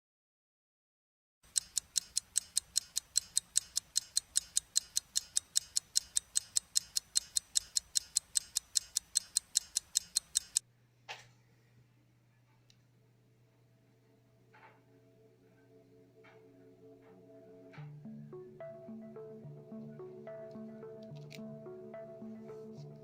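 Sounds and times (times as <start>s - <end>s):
wristwatch ticking: 1.4s - 10.6s.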